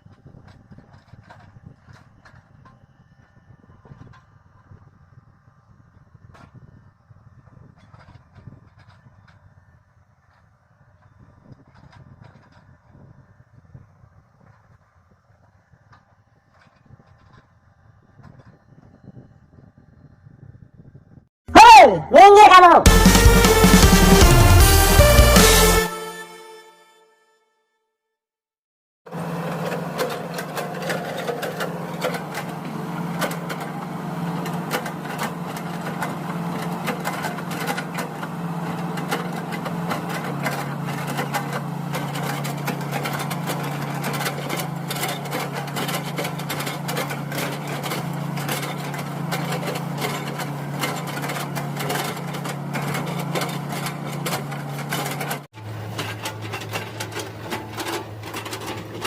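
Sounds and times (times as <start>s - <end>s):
excavator diesel engine running: 22.9s - 26.7s, 29.1s - 59.0s.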